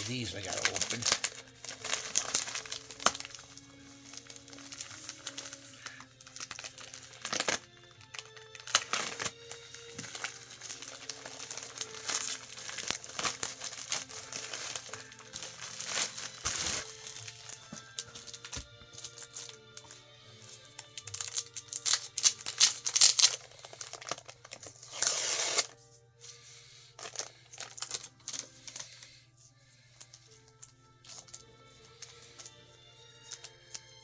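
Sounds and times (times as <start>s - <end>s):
packaging crinkling and rustling: 0.0s - 25.8s, 26.9s - 29.2s, 29.9s - 34.0s
soft background music: 0.0s - 34.0s.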